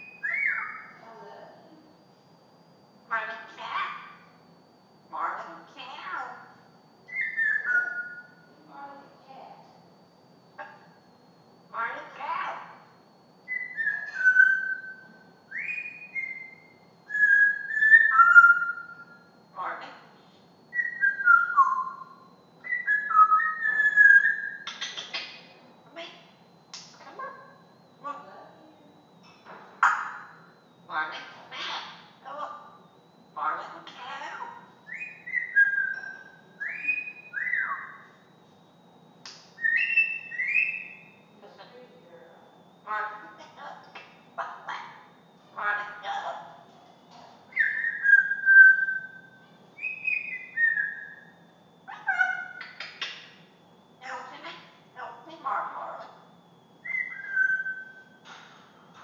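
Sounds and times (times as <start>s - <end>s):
parrot whistling: 0.0s - 1.0s, 7.1s - 8.4s, 13.4s - 19.8s, 20.7s - 26.1s, 29.8s - 32.0s, 33.4s - 38.2s, 39.6s - 41.2s, 44.4s - 46.4s, 47.5s - 53.4s, 56.8s - 58.2s.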